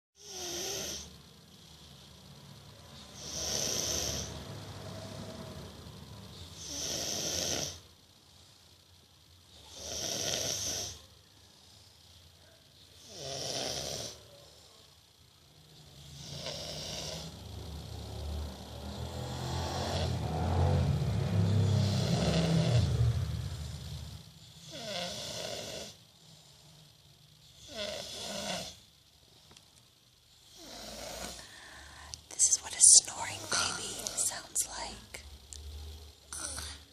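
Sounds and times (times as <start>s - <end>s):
child snoring: 0.2s - 1.2s, 3.0s - 4.7s, 6.3s - 7.9s, 9.5s - 11.1s, 13.0s - 14.4s, 15.8s - 17.5s, 18.9s - 26.1s, 27.5s - 28.9s, 30.4s - 35.2s, 36.3s - 36.9s.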